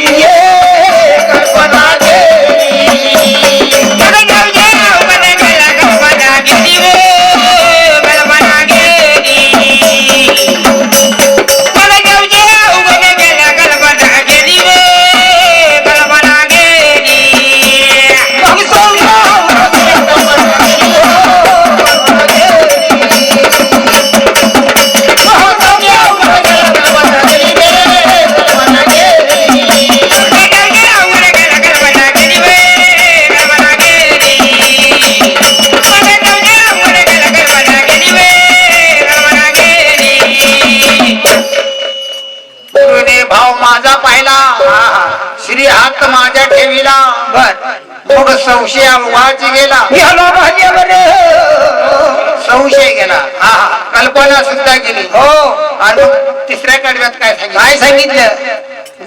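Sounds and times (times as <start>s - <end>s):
person singing devotional song: 0.0s - 41.8s, 42.7s - 59.0s
hand cymbals: 0.0s - 43.1s
hand drum: 18.5s - 38.5s, 39.3s - 41.7s.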